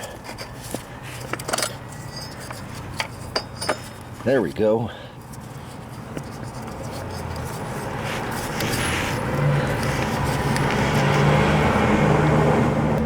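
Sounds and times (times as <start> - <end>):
engine running: 5.3 - 13.0.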